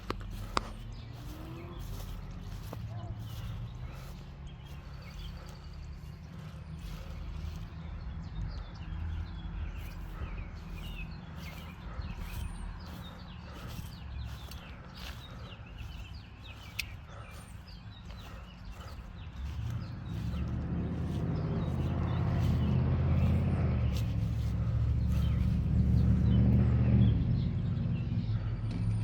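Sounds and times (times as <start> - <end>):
birds chirping: 0.0 - 29.0
steady low rumble: 0.0 - 29.0.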